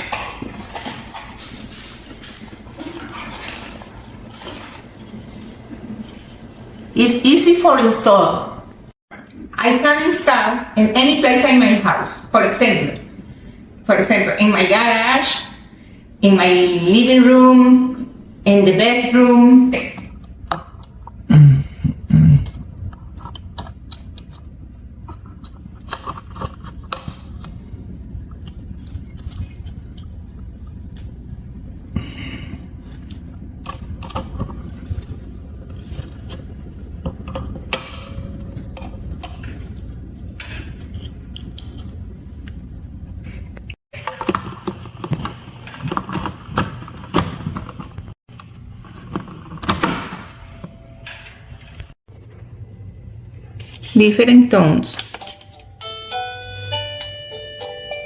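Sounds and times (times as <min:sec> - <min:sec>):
rustling: 0:00.0 - 0:06.8.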